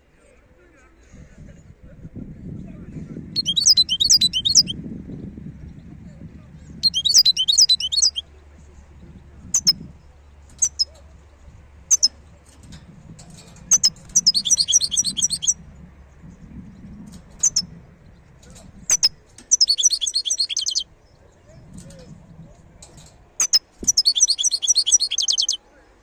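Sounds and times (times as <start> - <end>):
goldfinch singing: 3.4 - 4.7, 6.8 - 8.2, 9.5 - 9.8, 10.5 - 11.0, 11.9 - 15.6, 16.7 - 17.8, 18.4 - 22.1, 22.8 - 25.6.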